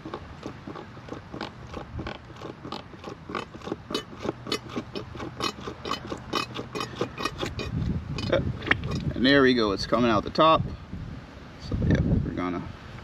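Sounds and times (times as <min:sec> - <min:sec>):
hand pump strokes: 0:00.0 - 0:09.2.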